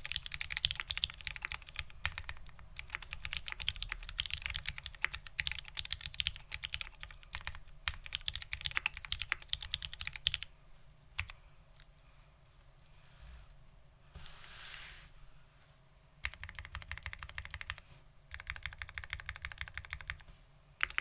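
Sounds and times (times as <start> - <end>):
fast typing on mechanical keyboard: 0.0 - 10.5, 16.2 - 21.0.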